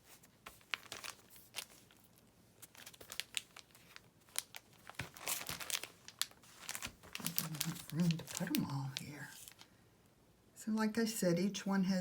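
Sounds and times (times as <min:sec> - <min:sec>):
paper packaging crinkling: 0:00.0 - 0:09.7.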